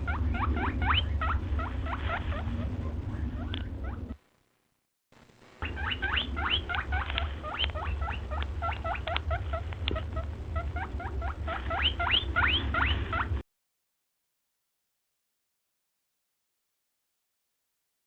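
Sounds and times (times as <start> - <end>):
low rumble: 0.0 - 4.5, 5.2 - 13.4
small animal squeaking: 0.1 - 4.2, 5.6 - 13.4.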